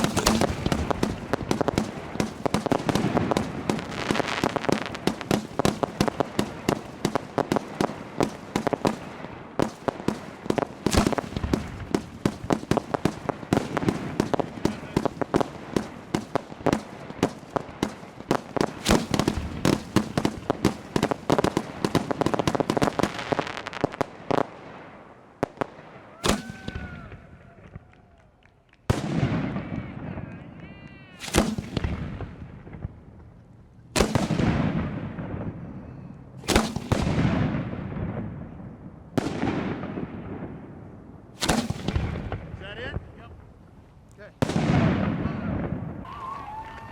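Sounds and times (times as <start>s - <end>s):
loud shell burst: 0.0s - 4.0s, 18.8s - 20.5s, 31.2s - 31.8s, 36.4s - 37.1s
fireworks bursts and reports: 0.0s - 46.9s.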